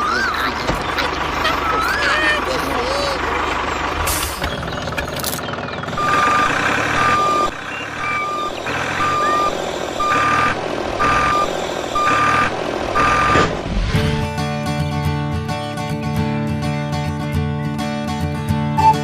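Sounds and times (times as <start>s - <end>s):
truck engine running: 0.0s - 19.0s
reversing alarm beeping: 6.0s - 13.5s, 18.8s - 19.0s.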